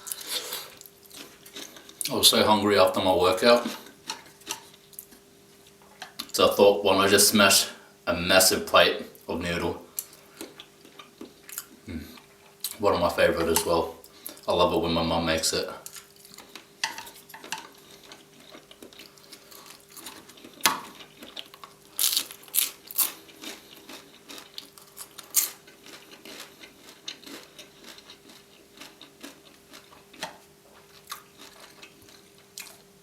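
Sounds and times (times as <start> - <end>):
chewing noodles: 17.3 - 32.8.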